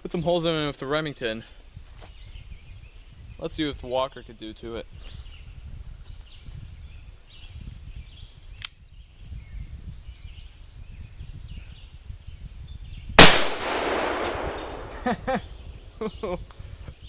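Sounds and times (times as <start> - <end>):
loud revolver shot with echo: 13.2 - 15.3.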